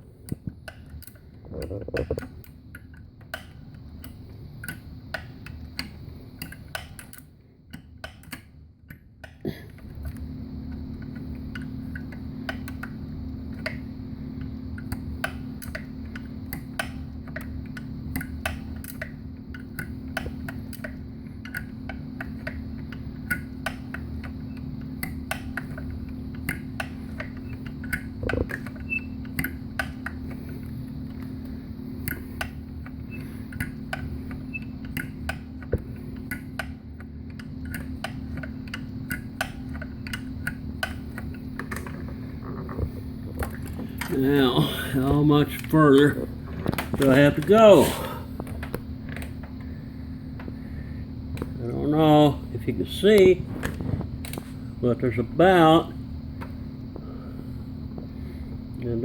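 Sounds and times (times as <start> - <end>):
steady low hum: 0.0 - 59.0
hand ratchet clicking: 0.3 - 9.4.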